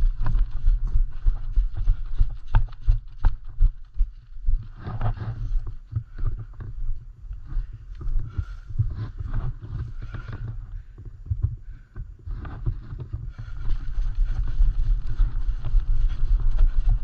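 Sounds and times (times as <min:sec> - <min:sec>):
wind buffeting microphone: 0:00.0 - 0:17.0
scuffing and rustling movement: 0:12.3 - 0:17.0.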